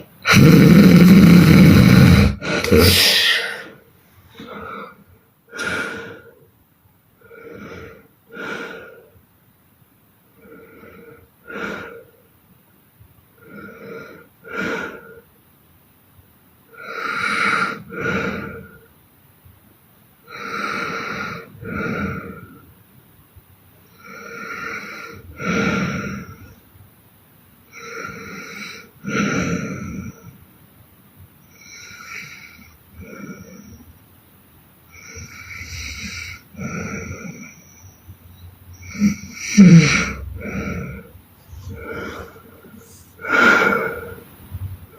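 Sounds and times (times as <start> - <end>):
woman snoring: 0.0 - 3.8, 20.3 - 22.6, 34.9 - 37.7, 38.7 - 44.4
quiet breathing: 2.2 - 9.4, 10.2 - 12.5, 13.3 - 15.4, 16.7 - 19.0, 20.2 - 22.9, 23.8 - 26.7, 31.4 - 34.1, 34.8 - 44.9.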